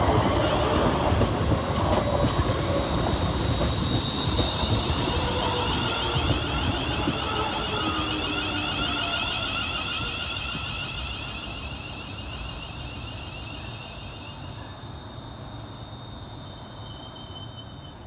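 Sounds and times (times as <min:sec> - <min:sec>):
electric train motor whine: 0:03.1 - 0:14.4.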